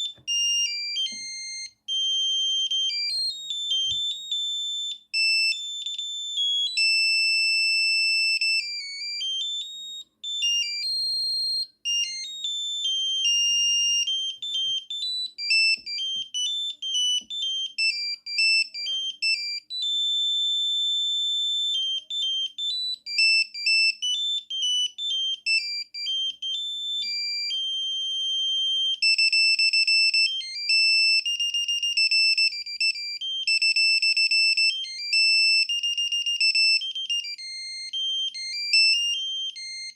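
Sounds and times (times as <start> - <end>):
mobile phone ringtone melody: 0.0 - 39.9.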